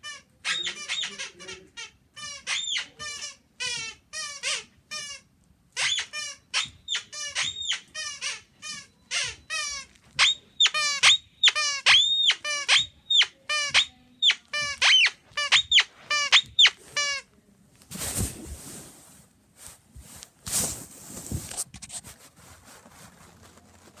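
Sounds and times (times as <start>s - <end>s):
guinea pig squeaking: 0.0s - 17.2s
rustling: 15.8s - 24.0s.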